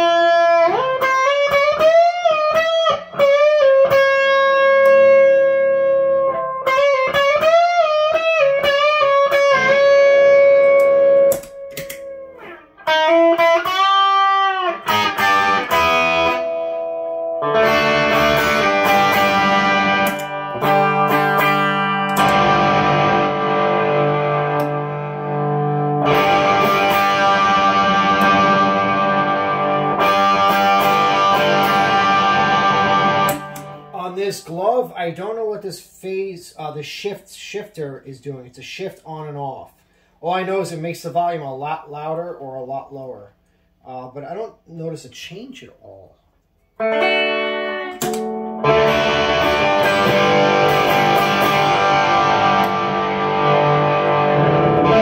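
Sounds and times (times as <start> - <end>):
distorted guitar chords: 0.0 - 34.2, 46.8 - 55.0
electric guitar single notes: 0.0 - 34.2, 46.8 - 55.0.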